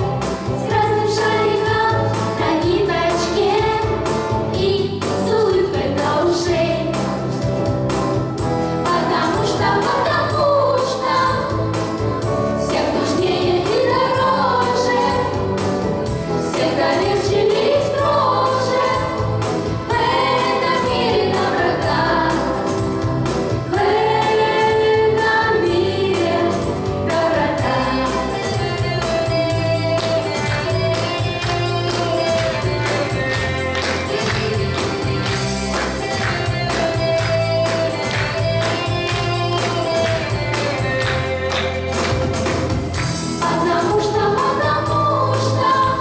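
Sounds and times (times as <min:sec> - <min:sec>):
instrumental accompaniment: 0:00.0 - 0:46.0
group singing in unison: 0:00.6 - 0:07.1, 0:08.9 - 0:11.7, 0:12.6 - 0:15.6, 0:16.4 - 0:28.7, 0:43.4 - 0:46.0.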